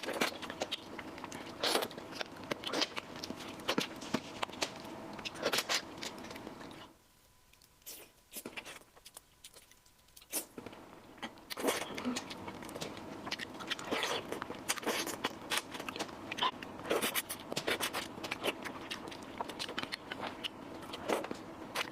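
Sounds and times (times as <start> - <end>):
chewing with smacking clicks: 7.5 - 10.4, 11.2 - 21.9.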